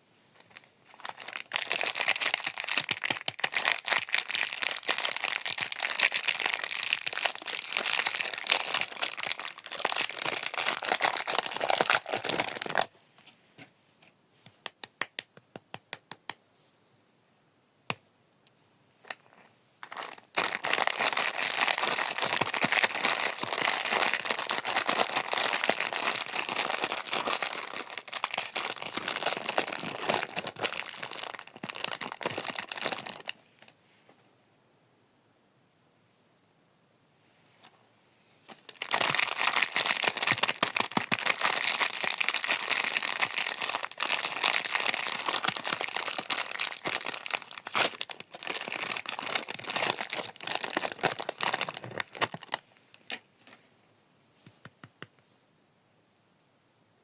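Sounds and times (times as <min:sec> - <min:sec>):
wrappers crinkling and tearing: 0:00.5 - 0:12.9, 0:19.1 - 0:33.4, 0:38.5 - 0:52.6.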